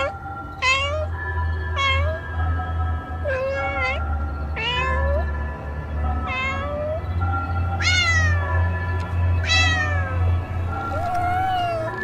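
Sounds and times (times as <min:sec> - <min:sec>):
background music: 0:00.0 - 0:12.0
cat meowing: 0:00.6 - 0:01.1, 0:06.3 - 0:07.0, 0:09.4 - 0:10.2, 0:10.8 - 0:12.0.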